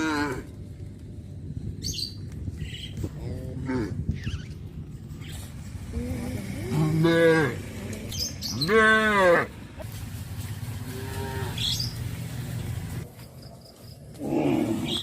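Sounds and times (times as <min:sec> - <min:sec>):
cows mooing: 0:00.0 - 0:00.5, 0:06.0 - 0:09.6, 0:10.8 - 0:12.0.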